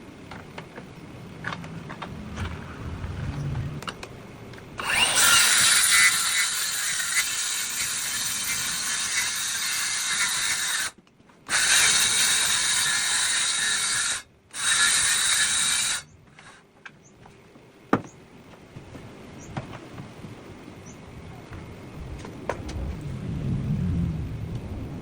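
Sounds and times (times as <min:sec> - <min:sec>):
saw cutting wooden board: 0:04.8 - 0:16.6.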